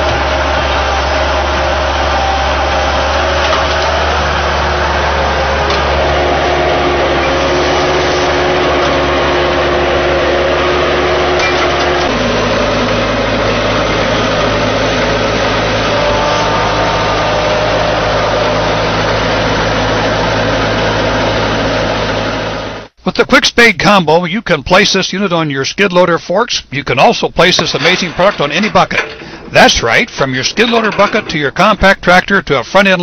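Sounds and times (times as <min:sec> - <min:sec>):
loader engine running: 0:00.0 - 0:23.0, 0:26.9 - 0:32.8.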